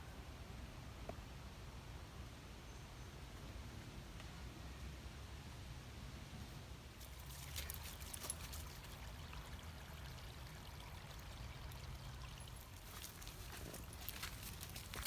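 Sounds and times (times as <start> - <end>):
small water splashes: 7.0 - 15.0
water trickling over stones: 7.0 - 15.0.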